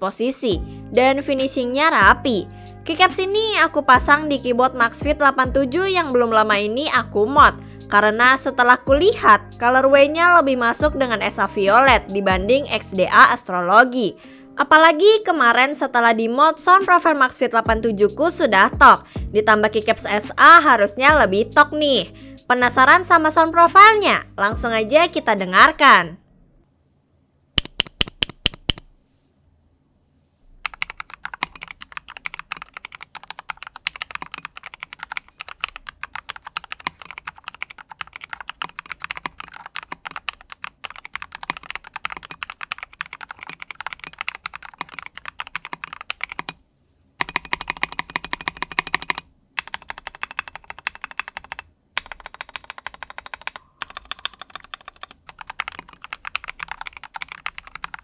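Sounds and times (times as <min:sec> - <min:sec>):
mechanical keyboard typing: 0:27.6 - 0:28.9, 0:30.6 - 0:46.6, 0:47.2 - 0:58.0.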